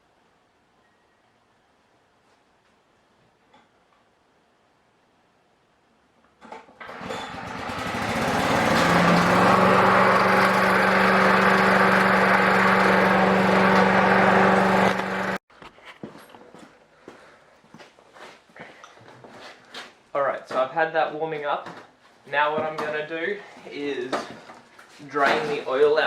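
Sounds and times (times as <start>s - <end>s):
lawnmower engine starting and running: 6.7s - 15.4s.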